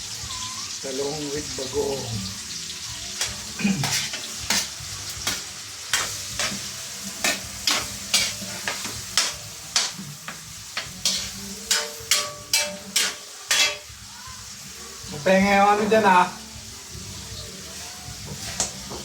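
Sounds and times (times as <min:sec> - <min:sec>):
food sizzling: 0:00.0 - 0:19.0
spatula scraping frying pan: 0:02.3 - 0:14.0, 0:17.6 - 0:19.0.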